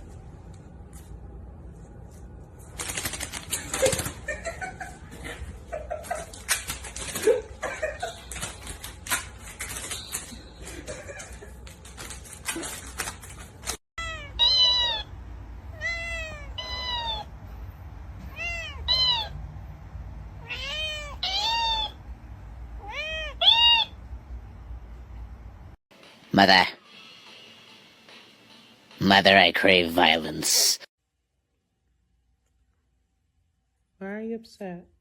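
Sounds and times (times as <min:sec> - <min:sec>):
rapid clatter of clicks and taps: 0:02.7 - 0:04.2
cat meowing: 0:14.0 - 0:15.1, 0:15.7 - 0:17.3, 0:18.2 - 0:19.4, 0:20.4 - 0:22.0, 0:22.8 - 0:24.0.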